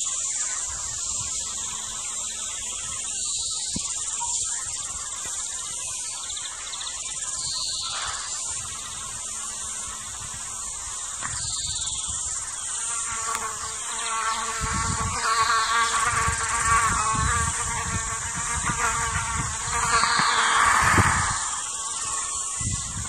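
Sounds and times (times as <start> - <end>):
high-pitched insect drone: 0.0 - 23.0.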